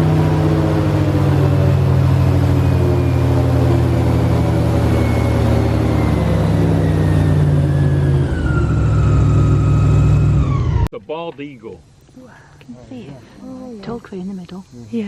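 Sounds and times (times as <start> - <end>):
airboat engine and propeller: 0.0 - 10.9
faint falling whine: 0.0 - 10.9.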